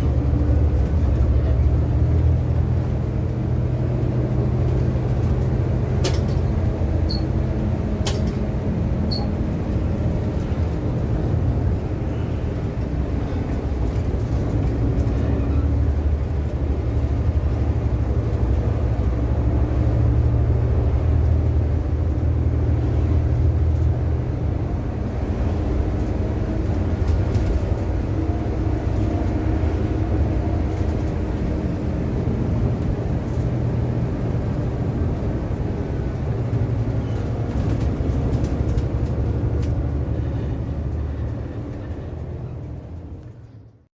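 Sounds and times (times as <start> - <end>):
car engine and road noise: 0.0 - 43.9.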